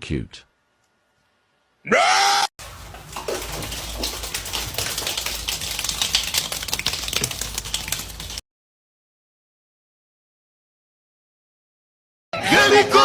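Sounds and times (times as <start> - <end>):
rapid clicking and tapping: 2.6 - 8.4.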